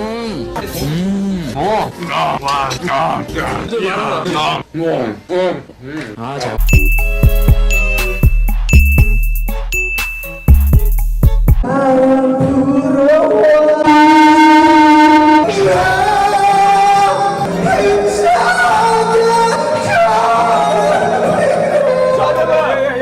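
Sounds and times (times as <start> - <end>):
music: 0.0 - 3.7, 6.6 - 23.0
person singing long notes: 11.6 - 22.2.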